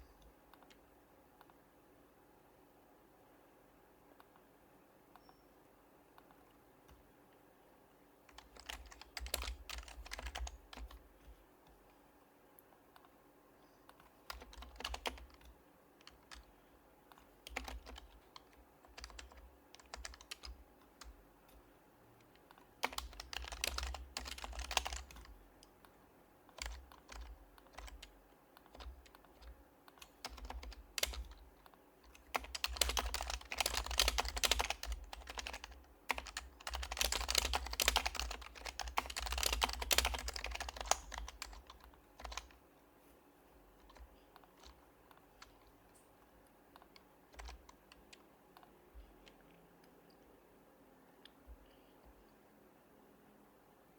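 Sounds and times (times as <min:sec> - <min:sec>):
keyboard typing: 0:08.2 - 0:11.8, 0:13.8 - 0:21.6, 0:22.2 - 0:42.6, 0:43.8 - 0:46.0, 0:46.7 - 0:50.2.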